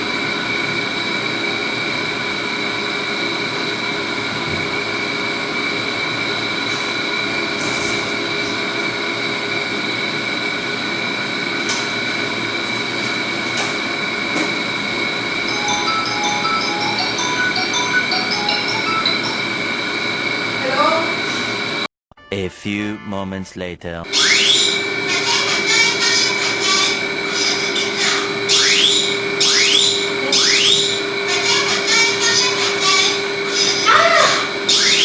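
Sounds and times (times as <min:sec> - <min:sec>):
fire alarm ringing: 0:15.0 - 0:21.9, 0:24.1 - 0:35.0.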